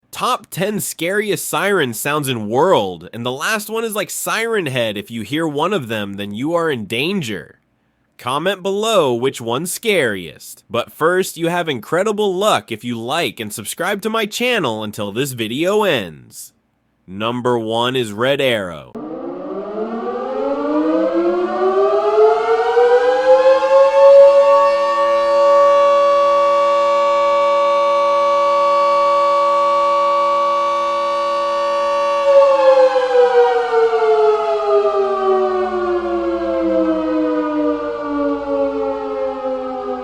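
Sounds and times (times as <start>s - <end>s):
outdoor warning siren winding: 19.0s - 40.0s.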